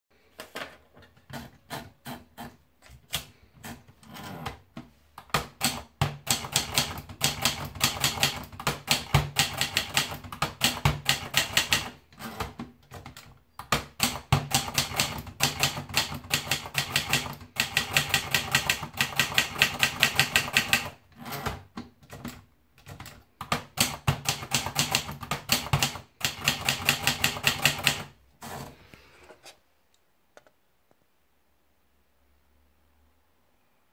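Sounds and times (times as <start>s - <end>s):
typewriter keystrokes: 5.2s - 28.2s.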